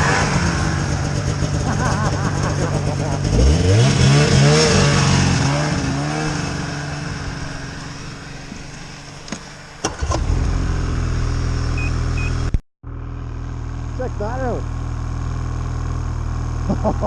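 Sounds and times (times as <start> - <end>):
snowmobile engine revving: 0.0 - 12.3, 16.1 - 17.0
engine running steadily: 0.0 - 17.0.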